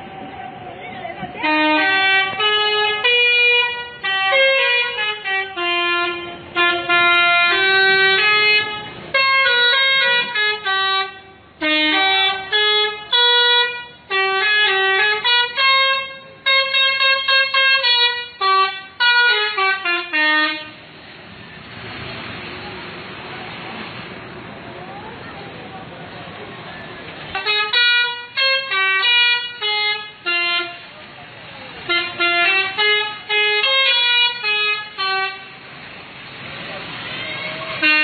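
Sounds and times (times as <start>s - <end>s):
musical bus horn melody: 1.4s - 20.9s, 27.3s - 30.9s, 31.8s - 35.7s, 37.4s - 38.0s.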